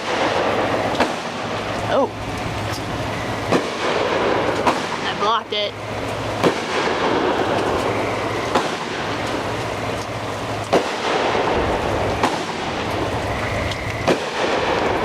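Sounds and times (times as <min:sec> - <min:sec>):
sharp firework bangs: 0:00.0 - 0:01.7, 0:03.4 - 0:05.4, 0:06.4 - 0:09.4, 0:10.7 - 0:13.1, 0:14.0 - 0:15.0
heavy rain hissing: 0:00.0 - 0:15.0.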